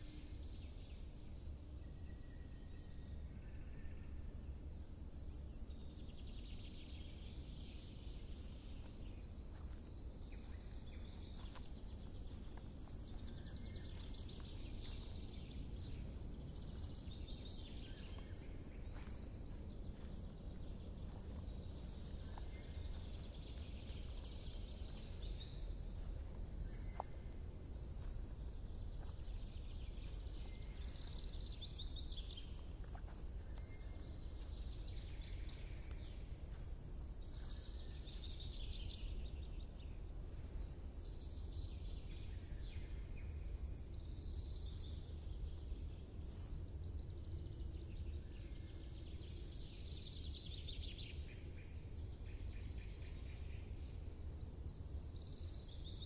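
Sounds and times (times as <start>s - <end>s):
low outdoor rumble: 0.0s - 56.0s
trilled birdsong: 0.0s - 56.0s.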